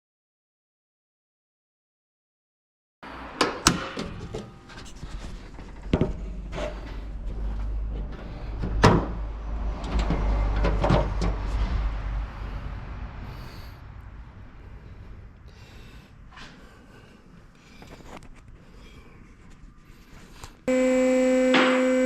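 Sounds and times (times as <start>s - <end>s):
low rumble: 9.2s - 15.6s.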